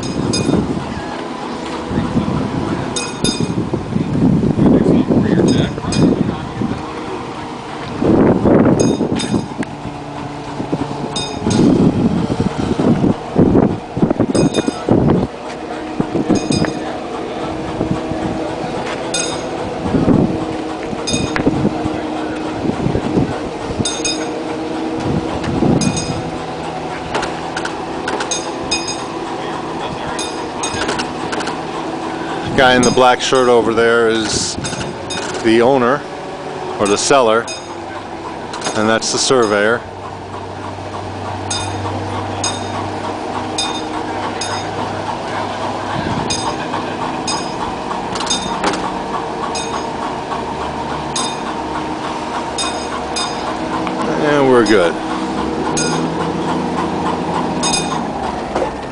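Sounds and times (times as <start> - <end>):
ringing metallic pings: 0.0 - 0.6, 3.0 - 3.6, 8.8 - 9.6, 11.2 - 11.8, 14.4 - 14.9, 16.3 - 17.0, 19.1 - 19.6, 21.1 - 21.4, 23.8 - 24.4, 25.8 - 26.2, 28.3 - 29.1, 30.2 - 30.9, 37.4 - 37.9, 41.5 - 42.9, 43.6 - 44.8, 46.3 - 46.7, 47.3 - 48.7, 49.5 - 50.0, 51.2 - 51.6, 52.6 - 53.6, 55.7 - 56.2, 57.6 - 58.1
lift engine running: 0.0 - 58.9.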